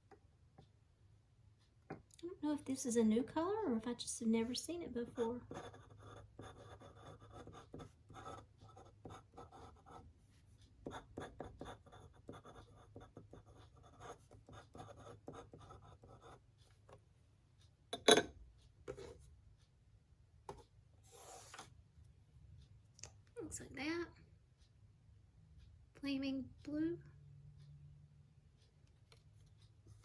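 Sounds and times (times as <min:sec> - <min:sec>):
pen scratching on paper: 0:04.4 - 0:16.5, 0:18.9 - 0:19.2, 0:20.5 - 0:21.7.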